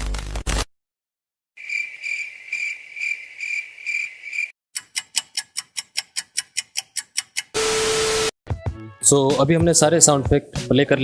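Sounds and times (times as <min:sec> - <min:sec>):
crickets chirping: 0:01.6 - 0:04.5
fast sharp ticks: 0:04.8 - 0:07.5.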